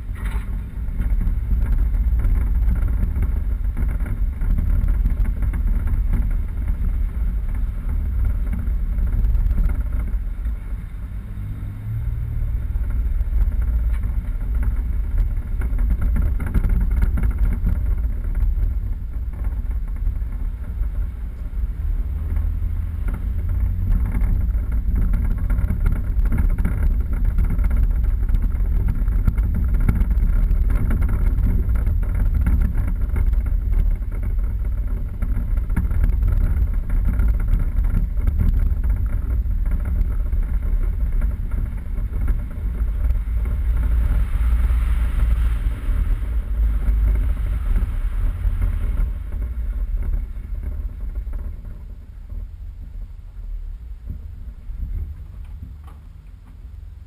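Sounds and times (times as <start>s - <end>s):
vehicle driving off-road: 0.0s - 57.0s.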